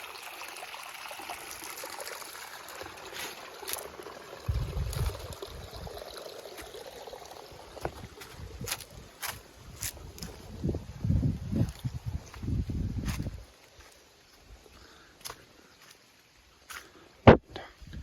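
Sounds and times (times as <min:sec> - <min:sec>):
stream trickling and splashing: 0:00.0 - 0:17.2
loud low rumbling bumps: 0:04.5 - 0:05.3.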